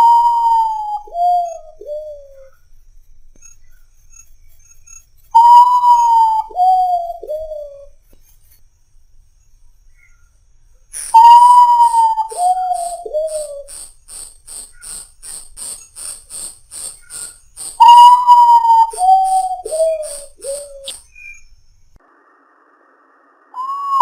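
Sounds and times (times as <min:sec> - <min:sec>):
bird whistling falling notes: 0:00.0 - 0:02.5, 0:05.3 - 0:07.9, 0:11.0 - 0:15.6, 0:16.7 - 0:21.5, 0:23.6 - 0:24.0
high-pitched pulsing: 0:11.0 - 0:21.1.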